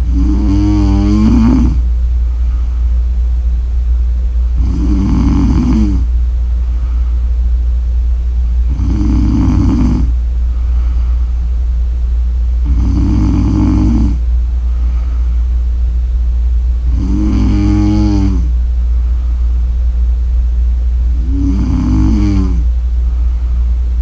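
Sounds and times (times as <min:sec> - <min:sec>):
woman snoring: 0:00.0 - 0:01.8, 0:04.6 - 0:06.1, 0:08.6 - 0:10.2, 0:12.6 - 0:14.2, 0:16.8 - 0:18.6, 0:21.1 - 0:22.8
steady low hum: 0:00.0 - 0:24.0.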